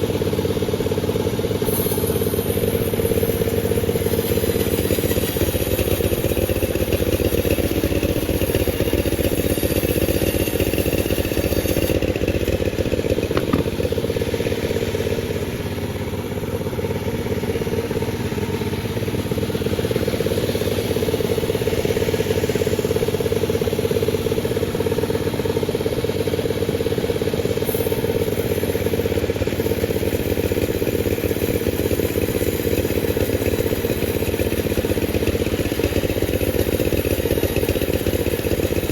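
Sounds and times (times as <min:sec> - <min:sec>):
chainsaw cutting log: 0:01.6 - 0:14.6, 0:27.6 - 0:38.9.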